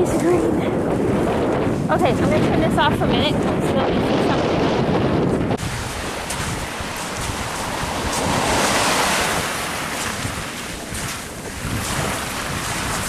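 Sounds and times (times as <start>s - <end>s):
ocean surf breaking: 0.0s - 13.0s
wind buffeting microphone: 0.0s - 13.0s.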